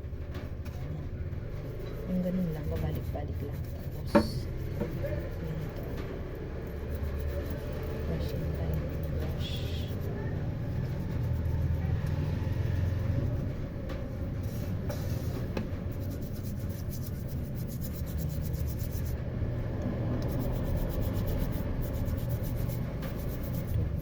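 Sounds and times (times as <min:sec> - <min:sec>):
brush scrubbing wristband: 0:02.0 - 0:11.8, 0:16.0 - 0:19.2, 0:20.2 - 0:24.0.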